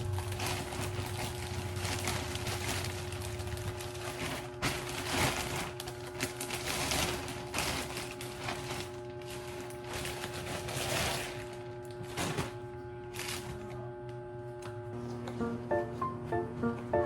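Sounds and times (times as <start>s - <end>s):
packaging crackling: 0.0s - 12.6s
soft background music: 15.1s - 17.0s.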